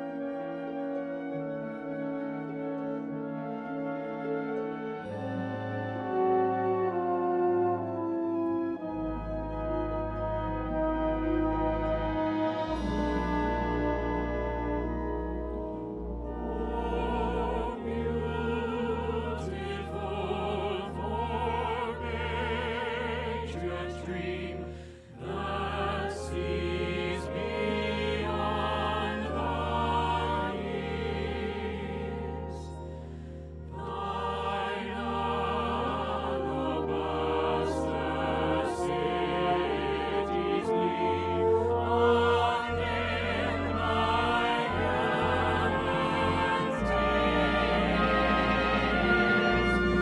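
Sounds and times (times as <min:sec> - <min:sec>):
low orchestral notes: 0:00.0 - 0:50.0
operatic singing with vibrato: 0:16.1 - 0:32.9, 0:33.7 - 0:50.0.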